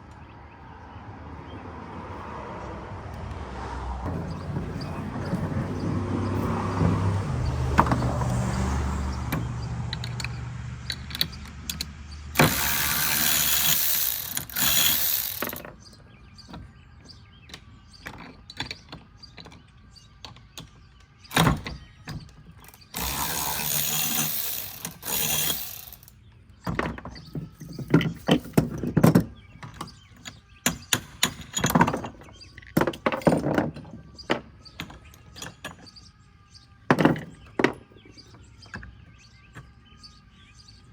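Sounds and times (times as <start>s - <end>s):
hand tools clicking and ratcheting: 9.3s - 15.8s, 22.6s - 26.2s
clinks and knocks: 9.3s - 36.0s, 36.9s - 39.8s.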